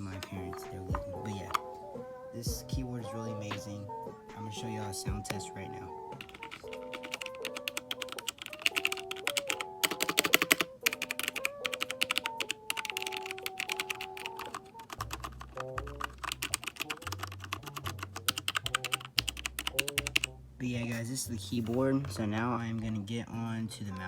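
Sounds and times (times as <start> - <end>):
background music with bass: 0.0 - 6.6, 14.9 - 24.0
mechanical keyboard key clacks: 6.2 - 20.3.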